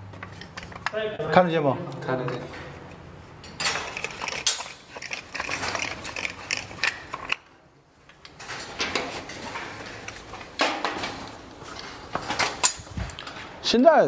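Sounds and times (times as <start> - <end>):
mechanical clicking and rattling: 3.4 - 13.5.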